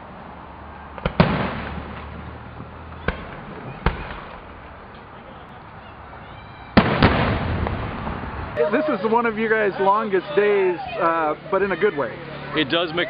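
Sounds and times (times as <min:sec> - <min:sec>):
fireworks crackle and rumble: 0:00.0 - 0:05.8, 0:06.7 - 0:09.8.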